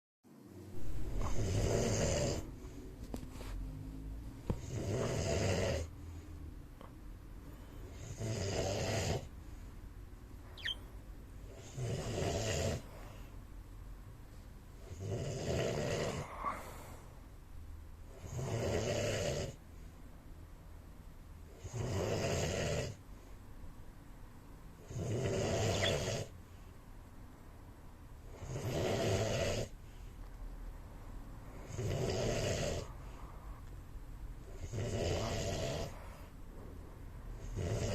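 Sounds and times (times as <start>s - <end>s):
man snoring: 1.2s - 2.5s, 4.6s - 5.9s, 7.9s - 9.3s, 11.5s - 12.8s, 14.8s - 16.3s, 18.2s - 19.6s, 21.6s - 23.0s, 24.9s - 26.3s, 28.3s - 29.7s, 31.7s - 32.9s, 34.5s - 36.0s, 37.4s - 37.9s.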